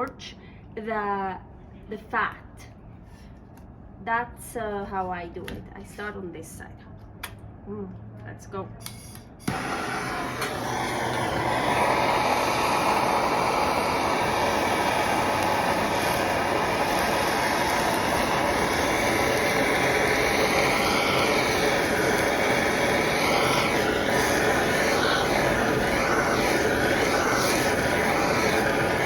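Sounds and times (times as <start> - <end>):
gas torch roaring: 8.8 - 29.0.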